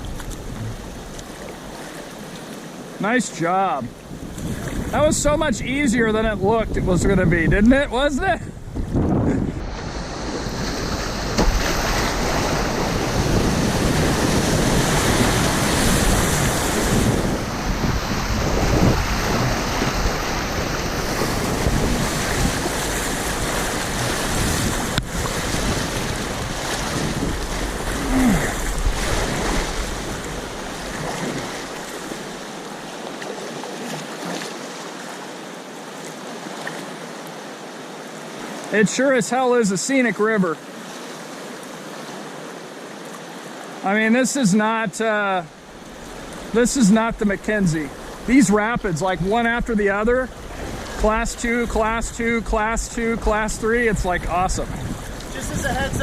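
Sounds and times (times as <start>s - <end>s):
wind buffeting microphone: 0.0s - 1.4s, 4.0s - 32.3s, 46.0s - 56.0s
river whitewater rushing: 9.6s - 52.4s.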